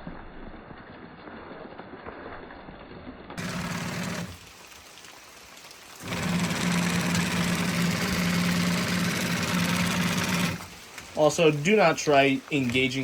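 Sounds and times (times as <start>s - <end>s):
garage door opener motor whirring: 3.4s - 4.3s, 6.0s - 10.7s.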